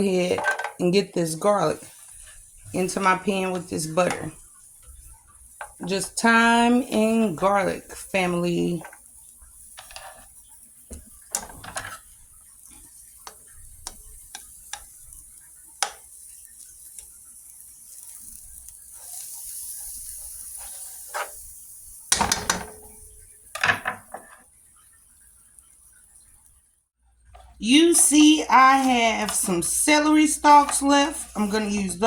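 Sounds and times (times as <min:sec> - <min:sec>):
utensil clattering: 0:00.0 - 0:01.0, 0:22.1 - 0:24.3, 0:27.4 - 0:32.0
utensil scraping pan: 0:00.0 - 0:04.4, 0:09.7 - 0:12.1, 0:18.8 - 0:24.5, 0:27.3 - 0:32.0
garlic sizzling in butter: 0:00.0 - 0:32.0.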